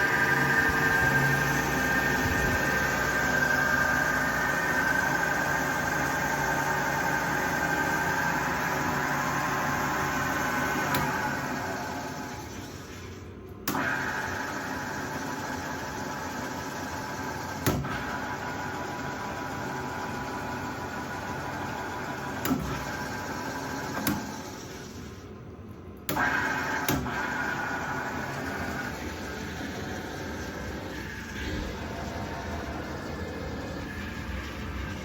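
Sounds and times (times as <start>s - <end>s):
pillar drill humming and whining: 0.0s - 12.5s, 26.8s - 35.0s.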